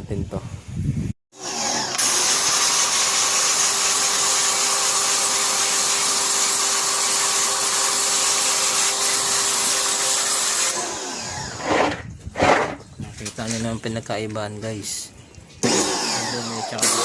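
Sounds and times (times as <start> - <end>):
motorized cleaning tool running: 1.4 - 12.0, 15.6 - 17.0.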